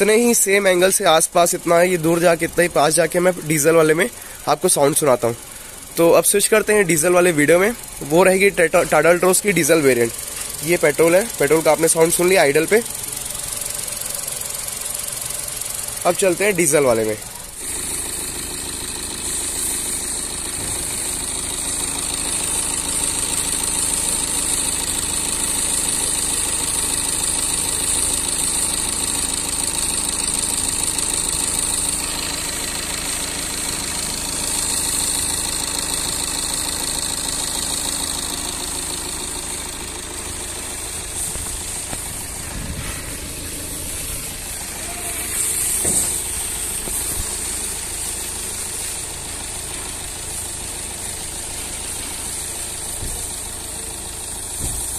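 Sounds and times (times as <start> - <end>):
diesel engine idling: 0.0 - 54.9.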